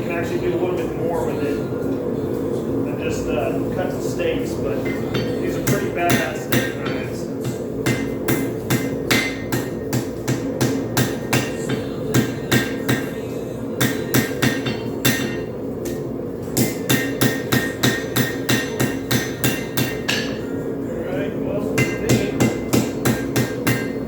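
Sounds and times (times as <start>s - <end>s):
hammer striking steel on anvil: 4.9s - 13.1s, 13.8s - 16.0s, 16.6s - 20.4s, 21.8s - 24.0s.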